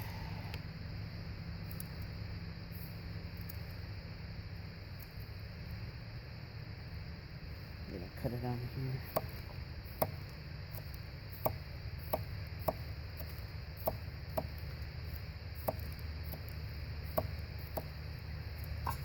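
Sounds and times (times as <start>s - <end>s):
steady low hum: 0.0s - 19.0s
knife chopping vegetables: 15.6s - 16.5s.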